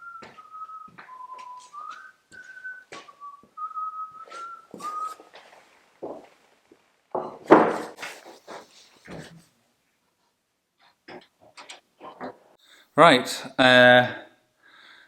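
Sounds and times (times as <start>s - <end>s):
person whistling a tune: 0.0s - 5.3s
knocks and thuds of handling: 7.1s - 8.0s.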